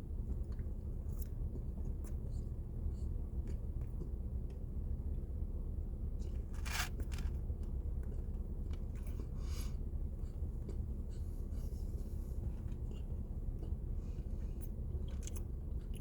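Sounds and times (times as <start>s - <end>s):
steady low hum: 0.0s - 16.0s
food rustling while eating: 6.2s - 7.4s.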